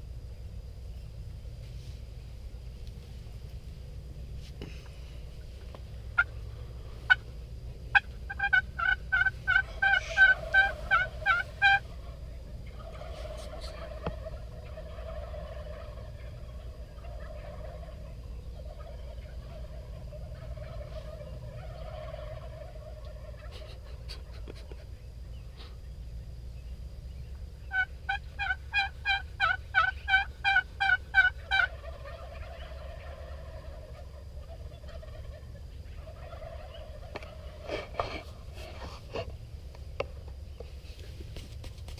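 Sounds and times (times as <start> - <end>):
turkey yelping: 6.1 - 6.4, 7.9 - 24.7, 27.7 - 39.3.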